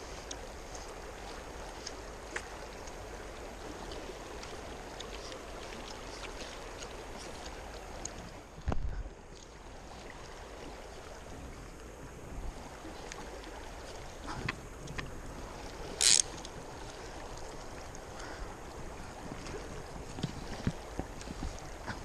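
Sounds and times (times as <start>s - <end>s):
rushing water: 0.0s - 22.0s
wind on microphone: 8.1s - 9.2s, 9.8s - 22.0s.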